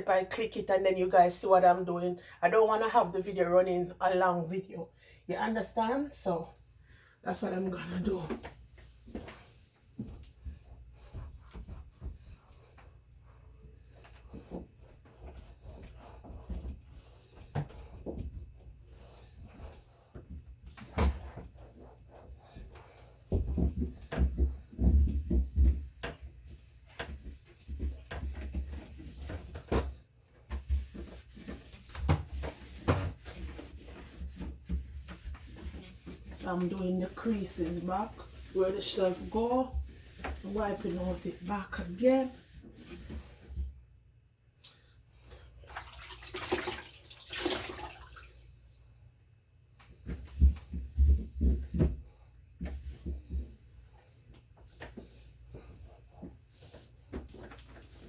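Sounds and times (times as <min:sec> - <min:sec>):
cloth wiping: 0:07.4 - 0:29.7, 0:30.5 - 0:43.6
dull thumps of scrubbing: 0:19.5 - 0:43.7, 0:49.9 - 0:58.0
wet cloth swishing: 0:45.6 - 0:48.4.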